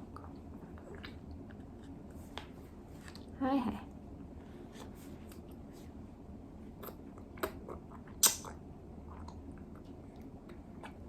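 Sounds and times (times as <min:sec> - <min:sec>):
baby lip smacks: 0:08.2 - 0:08.6.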